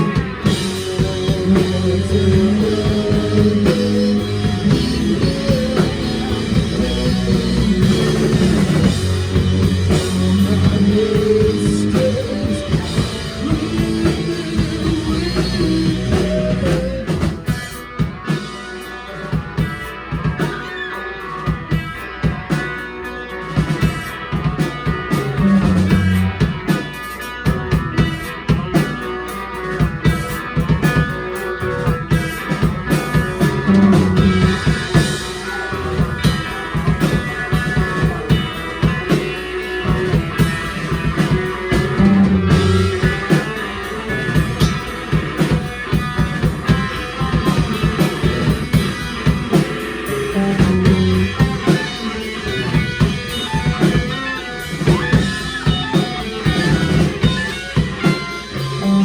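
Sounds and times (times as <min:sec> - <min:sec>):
drum kit beat: 0:00.0 - 0:59.0
electric guitar: 0:00.0 - 0:59.0
low guitar riff: 0:31.2 - 0:59.0.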